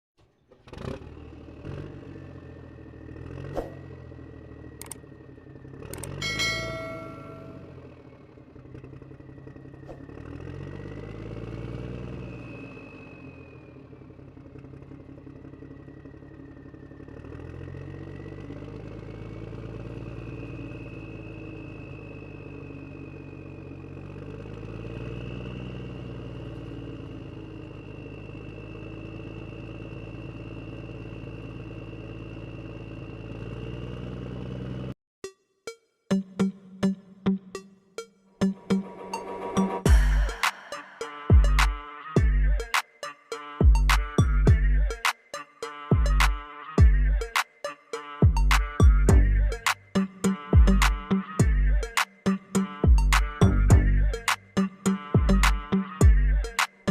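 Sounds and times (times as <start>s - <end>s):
sharp clicks: 4.8s - 5.0s, 5.9s - 6.2s
short electronic tone: 6.1s - 7.9s, 39.8s - 42.6s.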